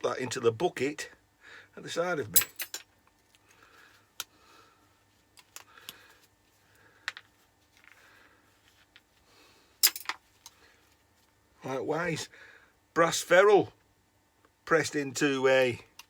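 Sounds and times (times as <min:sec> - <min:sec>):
pliers clinking on metal: 0:02.4 - 0:02.9, 0:09.8 - 0:10.2.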